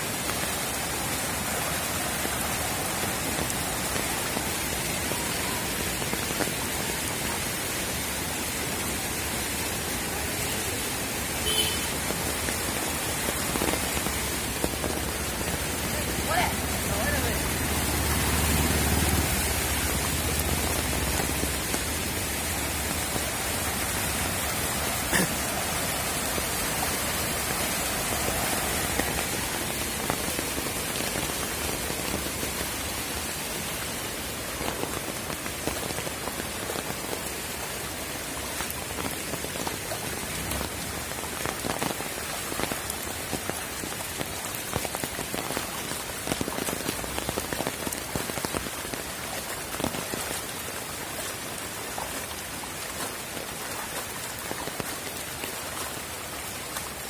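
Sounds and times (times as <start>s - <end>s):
rain falling: 0.0s - 57.0s.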